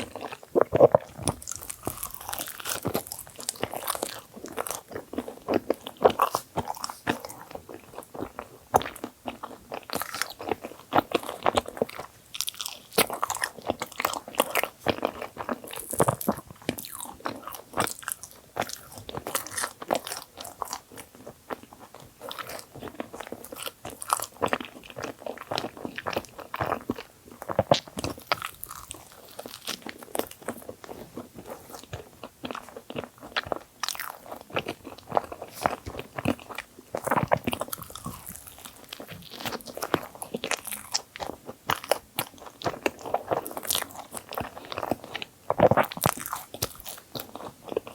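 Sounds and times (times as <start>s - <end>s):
biting and chewing with crunches: 0.0s - 47.9s.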